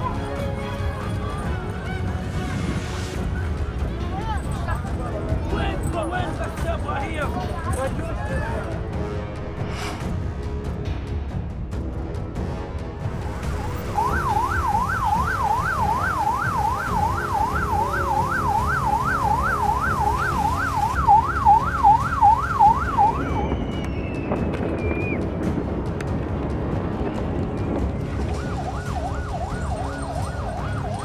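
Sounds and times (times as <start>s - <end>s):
steady low rumble: 2.2s - 23.7s
siren yelping: 13.6s - 23.6s, 28.3s - 31.0s.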